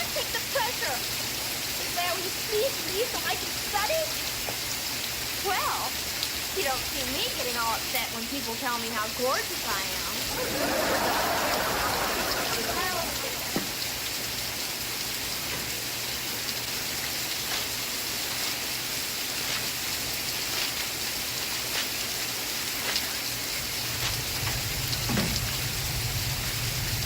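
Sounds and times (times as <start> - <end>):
steady rain falling: 0.0 - 27.0
single raindrop ticks: 4.3 - 4.7.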